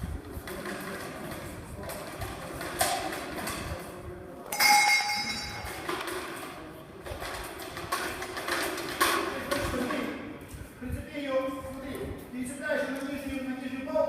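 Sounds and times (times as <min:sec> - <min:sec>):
steady background noise: 0:00.0 - 0:14.0
metallic clang: 0:04.5 - 0:06.2.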